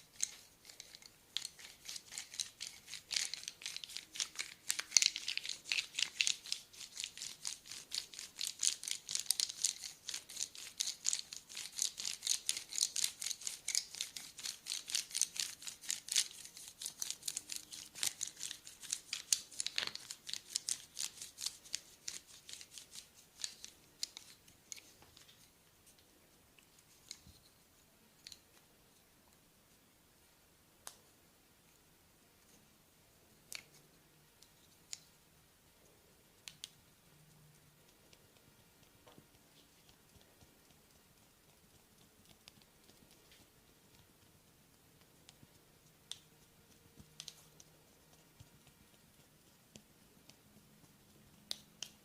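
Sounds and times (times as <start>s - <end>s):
dry scratching on skin: 0.0s - 25.4s.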